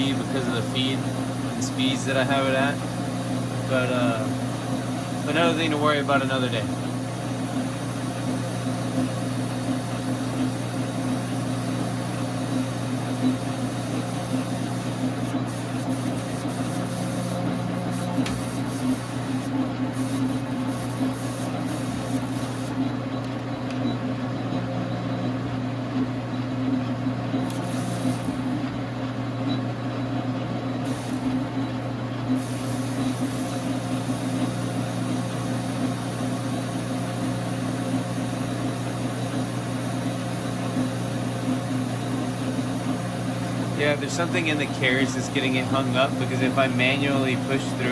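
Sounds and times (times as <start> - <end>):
lathe motor humming: 0.0 - 47.9.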